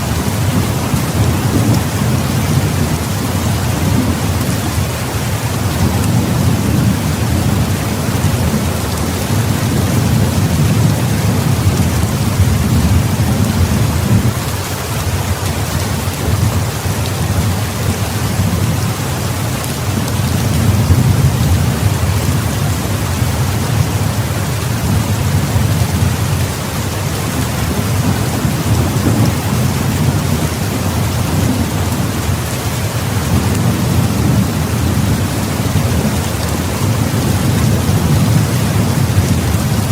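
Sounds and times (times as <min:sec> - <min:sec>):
heavy rain: 0:00.0 - 0:39.9
thunder rumbling: 0:00.0 - 0:39.9.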